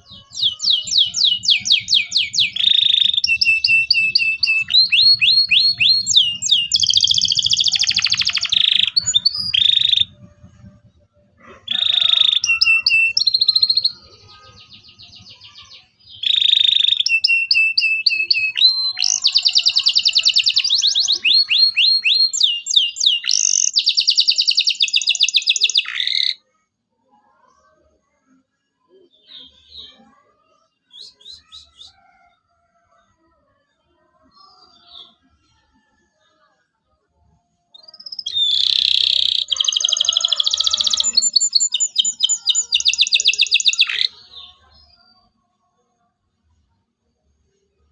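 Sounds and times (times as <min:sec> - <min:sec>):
canary chirping and trilling: 0:00.0 - 0:26.6, 0:37.7 - 0:45.8.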